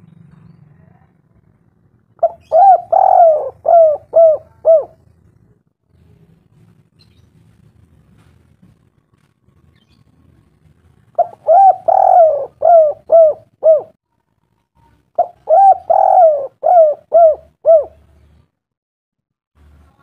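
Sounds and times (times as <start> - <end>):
bird-like call: 2.2 - 5.0, 11.2 - 13.9, 14.8 - 18.0.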